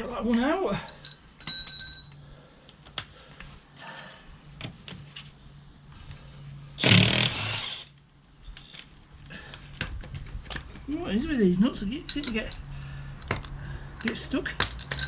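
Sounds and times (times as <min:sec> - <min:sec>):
metal tools clinking: 0:00.7 - 0:02.2, 0:11.9 - 0:15.0
power tool burst: 0:06.8 - 0:07.9.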